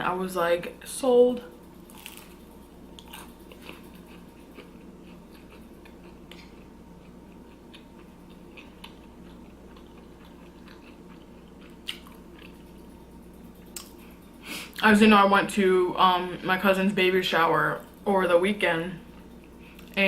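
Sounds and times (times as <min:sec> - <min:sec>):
faint steady hum: 0:00.0 - 0:20.0
person chewing food: 0:01.9 - 0:14.2.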